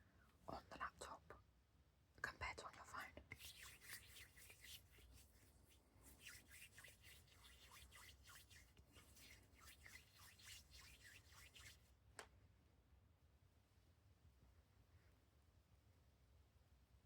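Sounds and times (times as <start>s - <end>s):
hands rubbing together: 3.3s - 11.9s.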